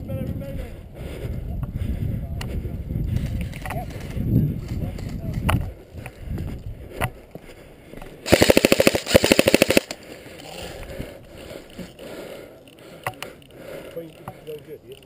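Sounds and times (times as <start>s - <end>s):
airsoft gun firing bursts: 8.3s - 10.0s.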